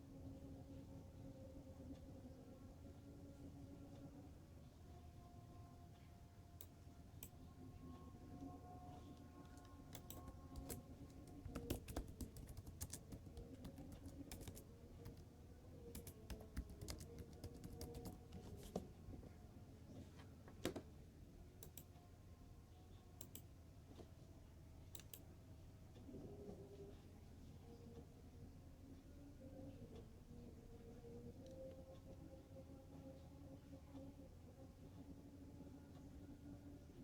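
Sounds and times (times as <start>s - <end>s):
computer keyboard typing: 8.9s - 15.3s, 15.9s - 18.9s, 24.9s - 25.2s.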